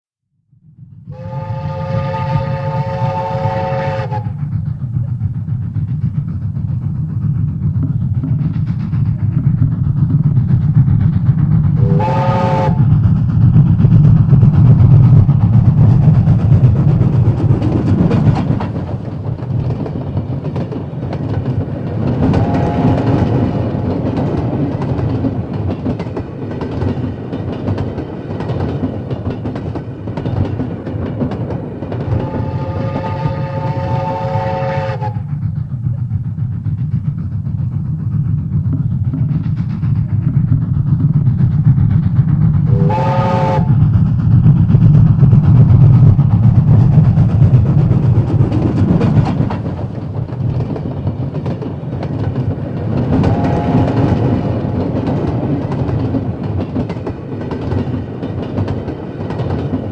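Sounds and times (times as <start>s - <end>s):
train passing rumble: 0.5s - 59.9s
train horn blast: 1.1s - 4.4s, 11.8s - 12.9s, 22.3s - 23.4s, 32.1s - 35.3s, 42.7s - 43.8s, 53.2s - 54.3s.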